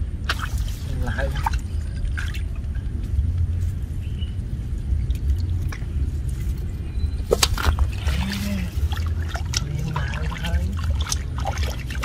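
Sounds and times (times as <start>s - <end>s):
steady low rumble: 0.0s - 12.0s
wet splashes in muddy water: 0.2s - 2.6s, 7.3s - 12.0s.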